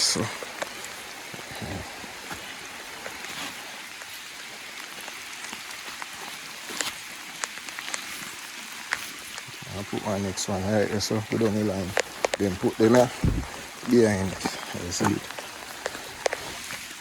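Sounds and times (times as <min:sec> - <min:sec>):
steady hiss: 0:00.0 - 0:17.0
faint clicks and taps: 0:11.2 - 0:13.4, 0:14.4 - 0:16.8.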